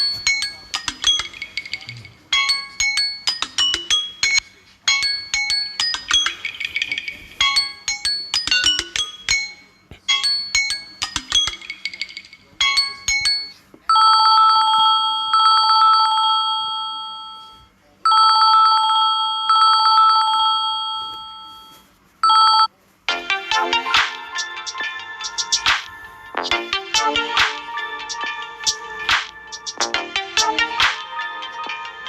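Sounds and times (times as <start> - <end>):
chime-like ringtone melody: 0.0 - 32.0
trilling telephone bell ringtone: 12.7 - 22.7.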